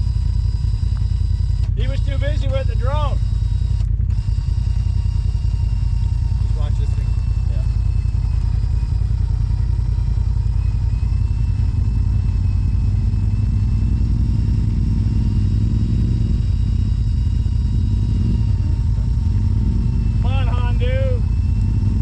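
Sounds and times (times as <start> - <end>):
faint high whines: 0.0 - 22.0
vehicle engine rumbling: 0.0 - 22.0.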